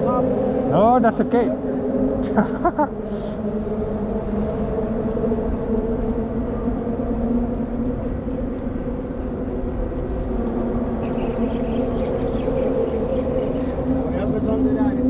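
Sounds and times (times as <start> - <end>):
outboard motor running: 10.5 - 15.0.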